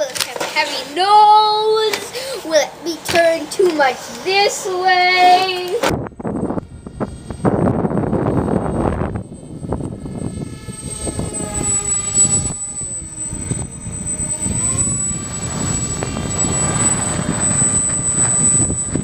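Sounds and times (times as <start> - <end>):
propeller motors whining: 0.0 - 19.0
wind rumble on microphone: 5.4 - 19.0.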